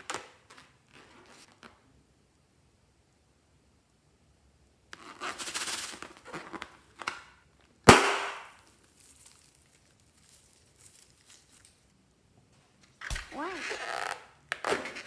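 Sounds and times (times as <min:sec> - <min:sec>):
balloon popping: 0:07.9 - 0:08.6
rustling and scraping from handling: 0:08.6 - 0:15.0.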